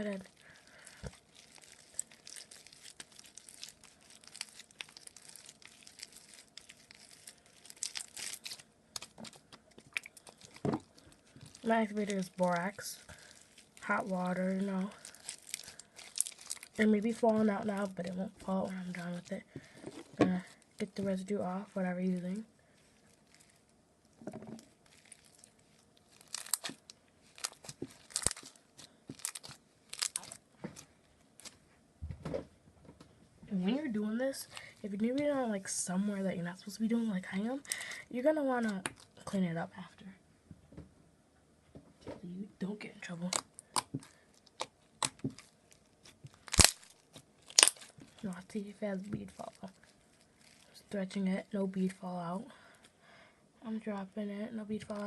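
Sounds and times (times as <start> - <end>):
slime crackling and popping: 0.0 - 31.6, 37.5 - 39.3, 43.2 - 51.0, 54.7 - 55.0.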